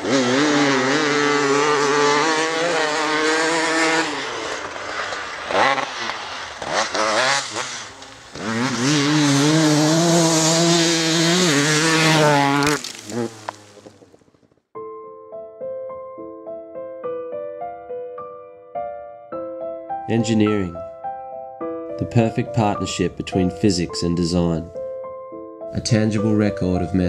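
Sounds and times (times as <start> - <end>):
two-stroke engine revving: 0.0 - 14.0.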